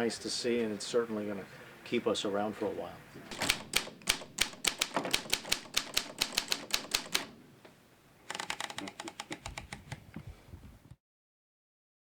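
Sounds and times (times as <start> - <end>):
typewriter key clacks: 3.3 - 7.4, 8.3 - 9.9.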